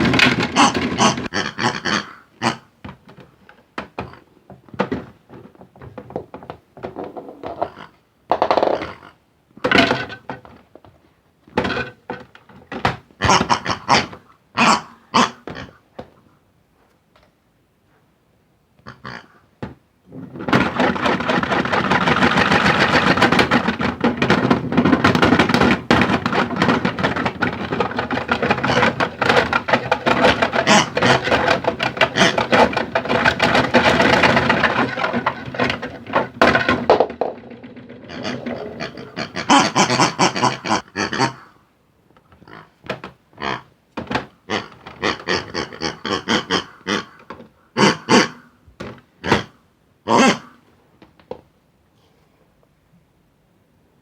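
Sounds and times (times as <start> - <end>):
balls clattering in drum: 0.0 - 1.4, 2.8 - 14.2, 19.6 - 40.8, 42.5 - 46.6
toy washing machine running: 20.2 - 39.6.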